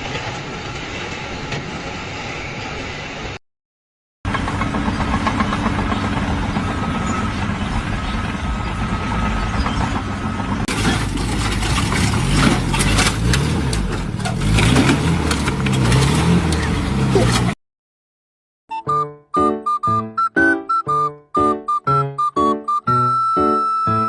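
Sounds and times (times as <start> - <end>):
engine humming: 4.3 - 17.6.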